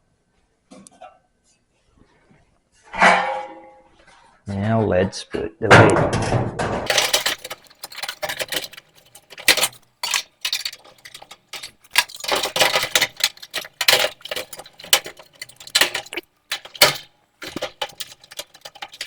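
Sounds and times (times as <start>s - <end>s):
sheet metal clicking and rattling: 6.9s - 19.0s.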